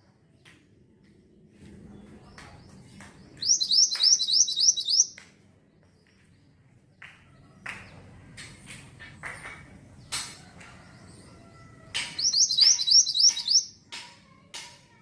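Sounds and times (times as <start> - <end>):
songbird chirping: 0.4 - 14.2
bird rising whistled notes: 3.4 - 5.2, 12.2 - 13.7.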